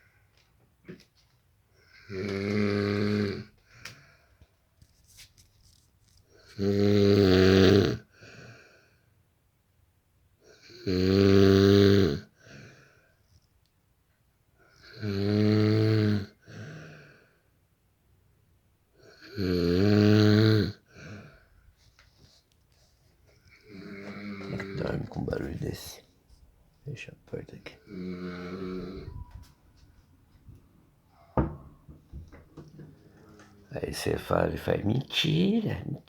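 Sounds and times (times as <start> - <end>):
man snoring loudly: 2.0 - 3.5, 6.6 - 8.1, 10.7 - 12.3, 14.8 - 16.4, 19.2 - 20.8, 23.6 - 25.1, 27.8 - 29.2.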